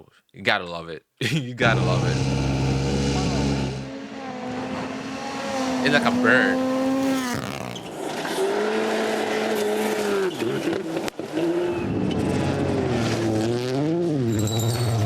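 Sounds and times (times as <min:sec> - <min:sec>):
rally car engine revving: 0:01.6 - 0:15.0.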